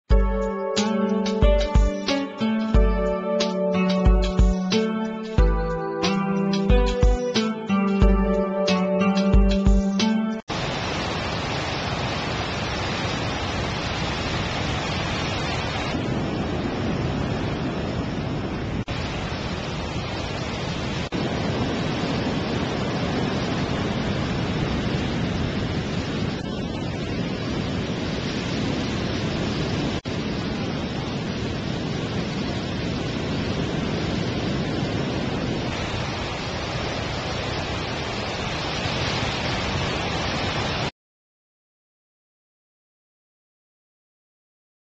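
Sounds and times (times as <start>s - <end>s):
ocean waves breaking: 10.0s - 40.9s.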